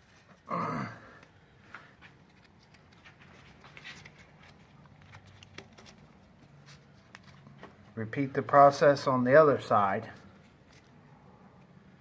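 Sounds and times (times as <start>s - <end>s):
strap webbing rustling and clicking: 1.2s - 8.0s, 10.2s - 11.0s.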